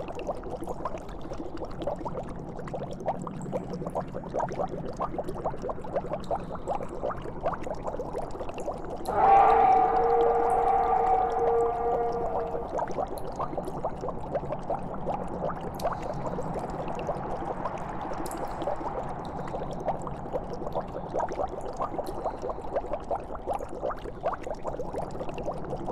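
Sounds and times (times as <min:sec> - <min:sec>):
liquid bubbling: 0:00.0 - 0:25.9
held tone: 0:09.1 - 0:13.2
low steady hum: 0:09.1 - 0:18.0.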